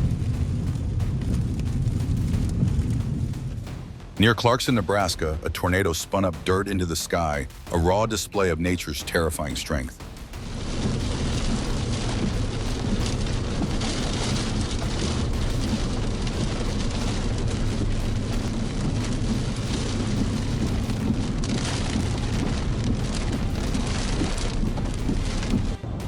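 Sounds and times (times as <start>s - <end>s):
strong wind buffeting microphone: 0.0s - 4.6s, 10.2s - 26.0s.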